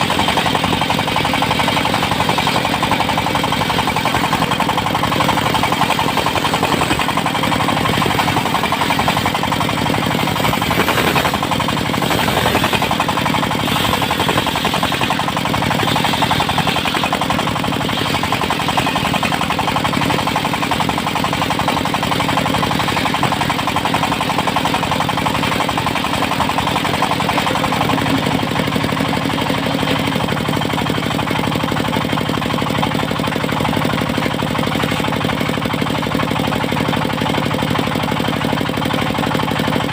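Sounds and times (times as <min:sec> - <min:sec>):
portable sawmill engine running: 0:00.0 - 0:39.9.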